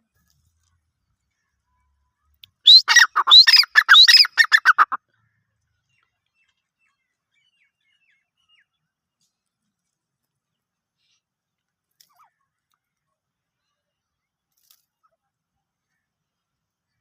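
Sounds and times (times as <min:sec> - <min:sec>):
francolin calling: 0:02.7 - 0:05.0.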